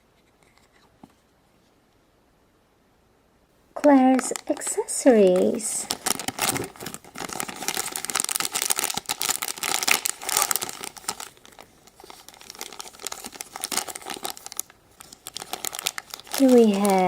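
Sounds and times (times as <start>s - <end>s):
packaging crinkling: 3.8s - 17.0s.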